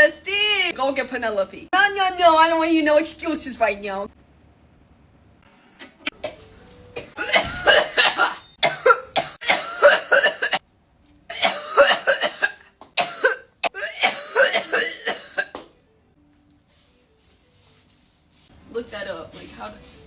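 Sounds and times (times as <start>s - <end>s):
person coughing hard: 7.0s - 10.6s, 11.3s - 15.7s.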